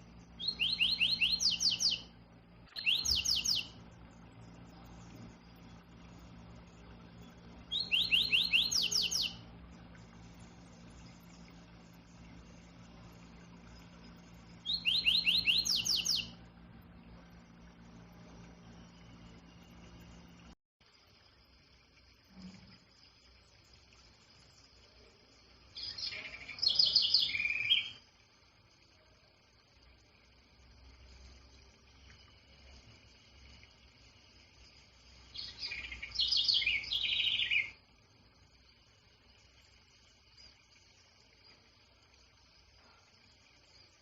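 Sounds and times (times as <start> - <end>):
songbird singing: 0.0 - 20.5, 25.7 - 28.0, 35.3 - 37.8
faint steady high hiss: 0.0 - 44.0
faint steady hum: 0.0 - 44.0
songbird whistling: 0.3 - 2.1, 2.7 - 3.8, 7.2 - 9.4, 14.6 - 16.4, 25.8 - 28.0, 35.4 - 37.8.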